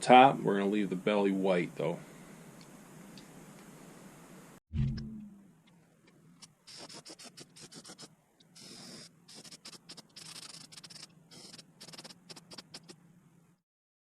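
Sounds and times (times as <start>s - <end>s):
airbrush spraying hiss: 6.7s - 13.0s.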